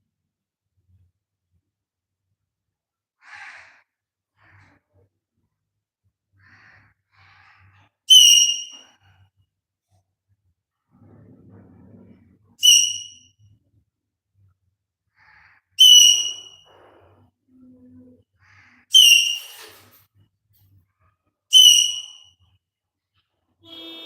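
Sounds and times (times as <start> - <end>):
parrot whistling: 8.1 - 8.8, 12.6 - 13.3, 15.8 - 16.6, 18.9 - 19.6, 21.5 - 22.2
faint soft chatter: 10.9 - 13.6, 16.5 - 20.8.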